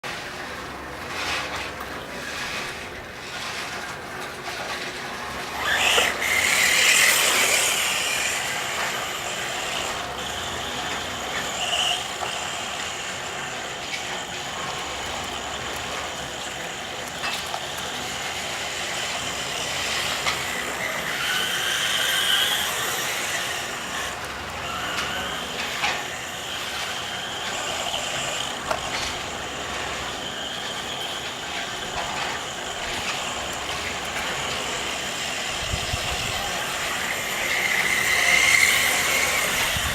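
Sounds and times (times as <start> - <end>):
toy car motor whirring: 5.5 - 39.9.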